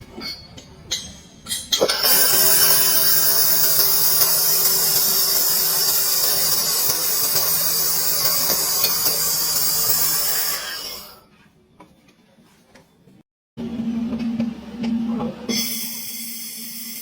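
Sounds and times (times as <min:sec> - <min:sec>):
welding arc hissing and crackling: 0:01.9 - 0:11.2.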